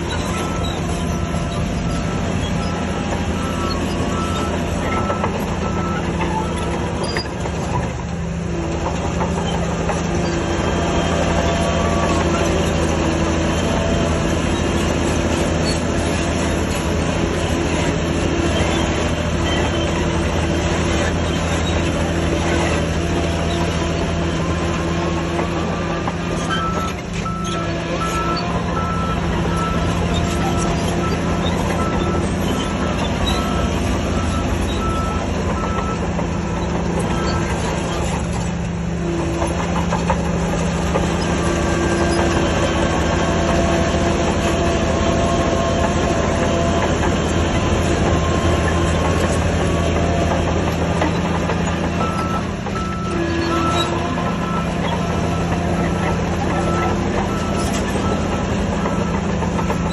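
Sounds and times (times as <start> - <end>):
reversing alarm beeping: 0.0 - 7.6, 24.4 - 38.4, 51.9 - 59.9
diesel engine running under load: 0.0 - 59.9.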